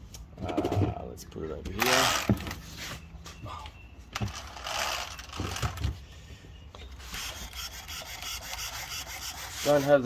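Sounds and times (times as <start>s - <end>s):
toy car knocking and thudding: 4.2s - 6.0s.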